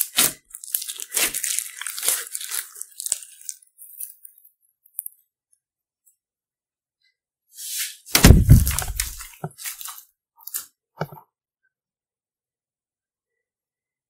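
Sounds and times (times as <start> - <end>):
slime squelching: 0.0 - 5.2, 8.2 - 11.2
beads crackling and popping: 0.0 - 5.3, 8.2 - 10.6.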